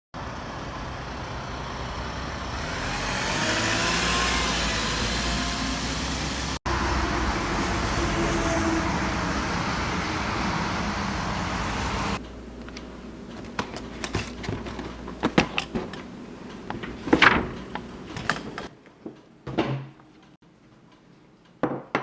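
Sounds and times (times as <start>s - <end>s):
road traffic noise: 0.1s - 15.3s.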